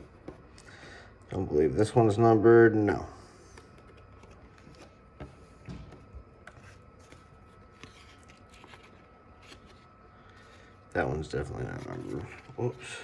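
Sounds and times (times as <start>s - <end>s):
trading cards clicking and rustling: 3.5s - 10.7s.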